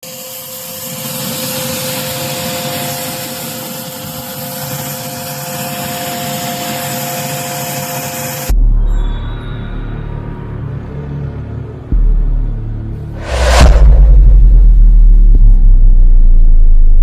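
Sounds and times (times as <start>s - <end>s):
loud low boom: 13.2s - 17.0s.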